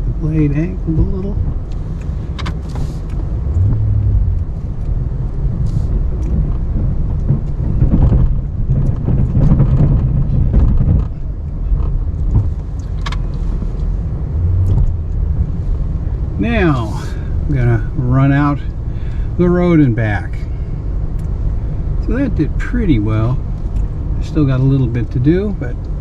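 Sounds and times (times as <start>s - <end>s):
pickup truck engine running: 0.0s - 26.0s
plow pushing snow: 12.4s - 20.7s.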